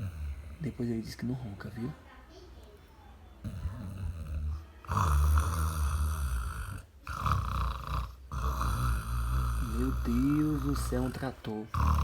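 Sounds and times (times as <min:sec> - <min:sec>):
man snoring loudly: 0:03.5 - 0:12.0.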